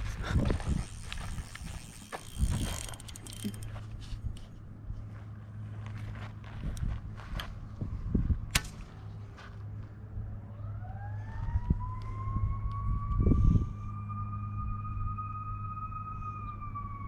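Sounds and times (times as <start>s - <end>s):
steady low hum: 0.0s - 17.0s
siren winding up: 0.8s - 3.7s, 10.7s - 17.0s.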